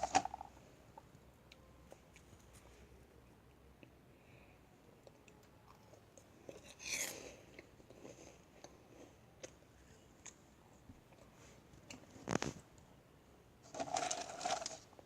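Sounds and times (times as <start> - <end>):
cookie crunch: 0.0 - 0.5, 13.7 - 15.0.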